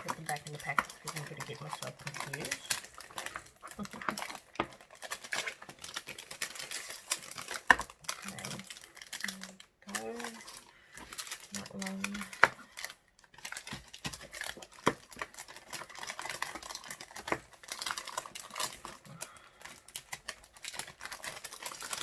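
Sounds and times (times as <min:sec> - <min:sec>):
plastic bags rustling and crinkling: 0:00.0 - 0:22.0.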